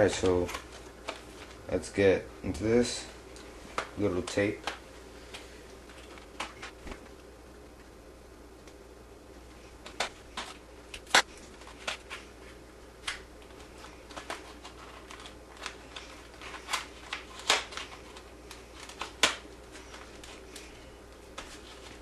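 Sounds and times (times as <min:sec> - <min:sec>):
packaging clicks and crackles: 0:13.1 - 0:20.7.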